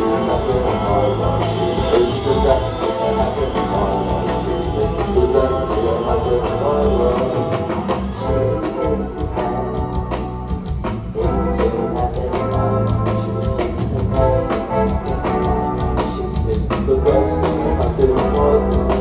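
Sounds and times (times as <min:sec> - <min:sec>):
live rock band playing: 0:00.0 - 0:19.0.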